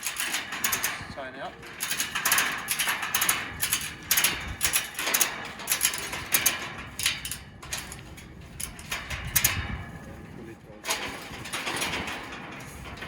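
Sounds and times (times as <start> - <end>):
ratchet strap clicking: 0.0 - 1.1, 1.8 - 9.7.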